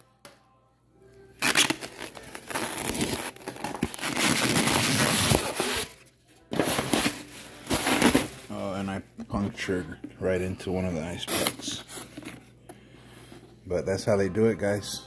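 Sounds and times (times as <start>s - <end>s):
packaging crinkling and tearing: 1.4s - 6.0s.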